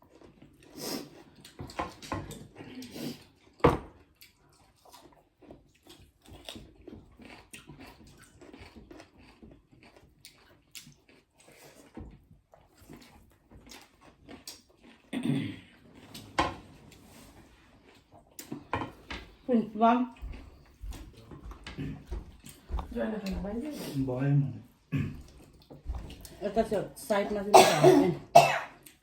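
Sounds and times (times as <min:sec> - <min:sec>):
chewing and lip smacking: 0:00.0 - 0:15.1, 0:16.9 - 0:19.4, 0:20.1 - 0:23.4, 0:25.2 - 0:26.4.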